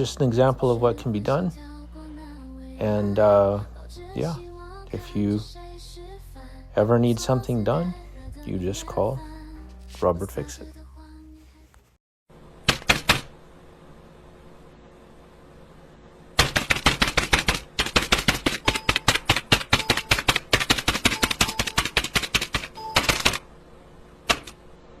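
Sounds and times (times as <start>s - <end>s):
faint steady hum: 0.0s - 25.0s
rapid keyboard typing: 12.7s - 13.3s, 16.4s - 23.4s.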